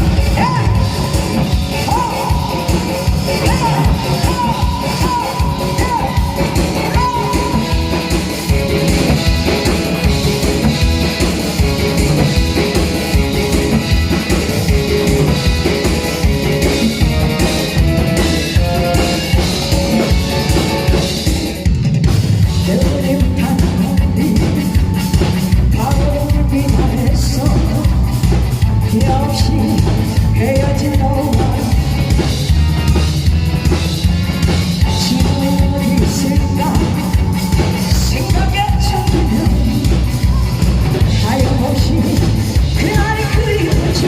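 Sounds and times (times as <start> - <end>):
person singing: 0.0 - 13.9, 22.5 - 32.2, 34.8 - 44.0
disco backing track: 0.0 - 44.0.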